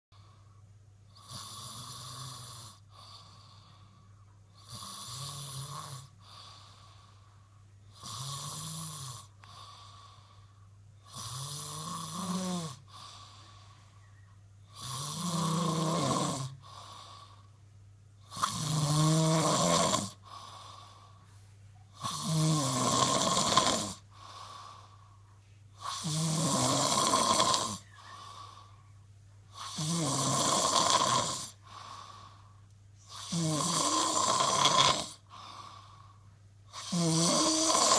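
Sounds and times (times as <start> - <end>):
person snoring: 1.1 - 4.0, 4.6 - 7.2, 7.9 - 13.8, 14.6 - 17.5, 18.2 - 21.2, 21.9 - 25.0, 25.8 - 28.7, 29.5 - 37.9
soft breathing: 2.8 - 4.5, 6.0 - 7.8, 9.2 - 10.8, 12.8 - 14.4, 16.5 - 17.6, 20.1 - 22.0, 24.0 - 25.9, 27.8 - 29.8, 31.5 - 33.3, 35.2 - 36.5.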